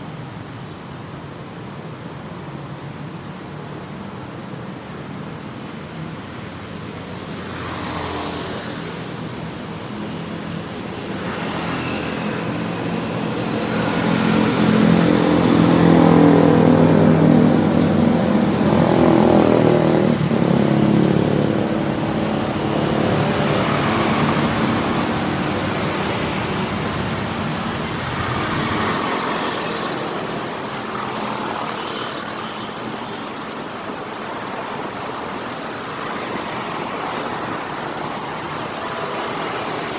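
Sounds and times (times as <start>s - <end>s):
city street traffic: 0.0s - 39.9s
vehicle engine passing close: 13.7s - 29.2s.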